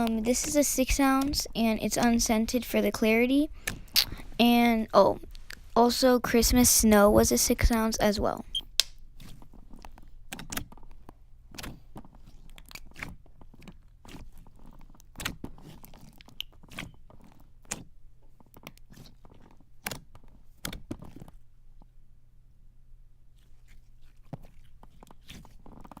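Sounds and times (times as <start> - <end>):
slime squishing with sticky pops: 8.6 - 21.9, 23.3 - 26.0.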